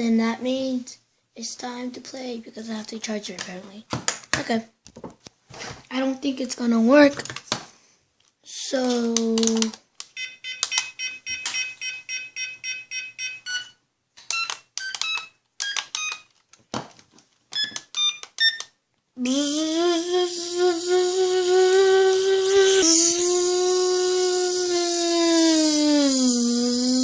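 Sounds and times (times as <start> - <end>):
toy helicopter rotor motor whine: 22.1 - 27.0.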